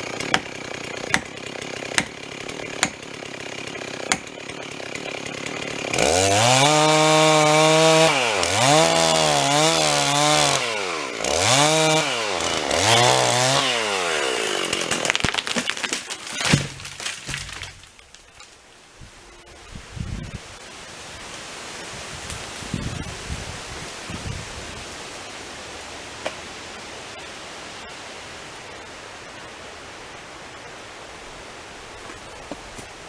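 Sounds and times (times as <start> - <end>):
wood cracking: 0.0 - 10.4, 11.2 - 18.8
chainsaw cutting: 0.0 - 26.6.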